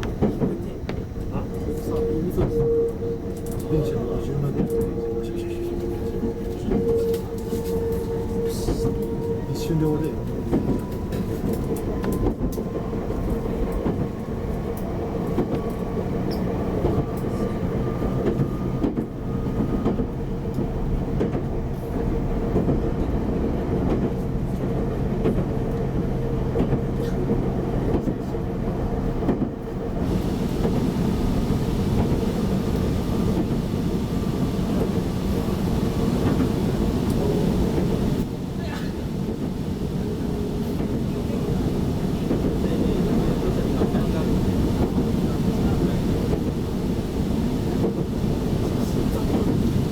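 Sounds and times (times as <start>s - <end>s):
faint train motor whine: 0.0s - 21.9s, 29.7s - 49.9s
rail joint clicks: 0.0s - 23.1s, 23.7s - 28.4s, 29.1s - 38.3s
train wheels rumbling on rail: 0.0s - 49.9s.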